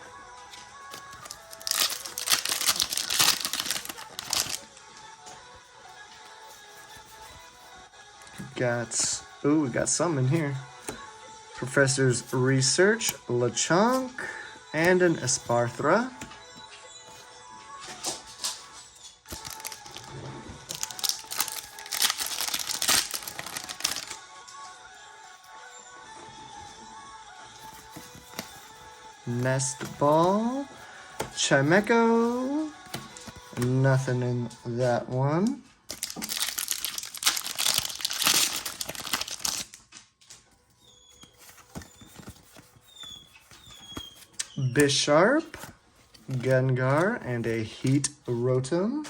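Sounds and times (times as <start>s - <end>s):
quiet background music: 0.0s - 49.0s
foil wrapper crinkling and tearing: 0.9s - 4.7s, 19.3s - 20.1s, 20.7s - 24.2s, 35.9s - 39.9s.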